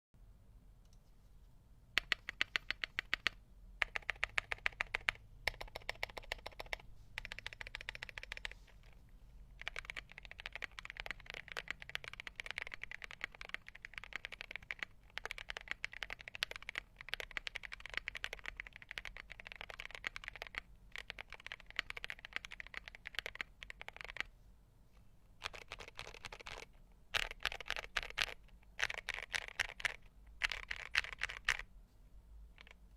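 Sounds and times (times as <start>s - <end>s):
mechanical keyboard typing: 2.0s - 9.0s, 9.6s - 24.3s, 25.4s - 31.6s, 32.6s - 32.8s.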